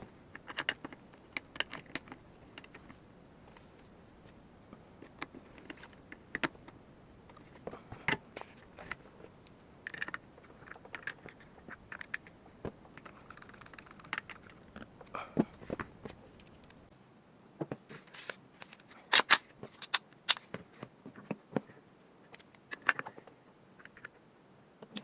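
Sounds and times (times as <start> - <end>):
rifle parts clicking and scraping: 18.1 - 20.5.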